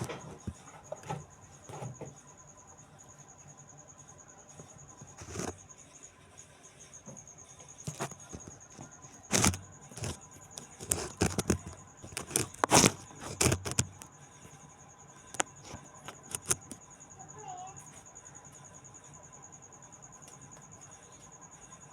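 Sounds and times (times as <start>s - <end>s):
sharp knocks and clatters: 0.0s - 2.2s
cricket trilling: 0.0s - 21.9s.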